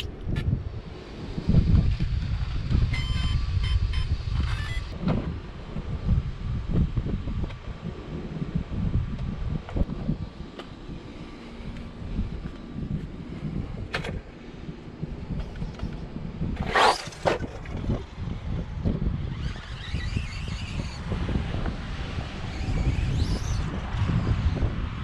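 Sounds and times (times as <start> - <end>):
wind rumble: 0.0 - 25.0
electric motor whining: 15.3 - 24.6.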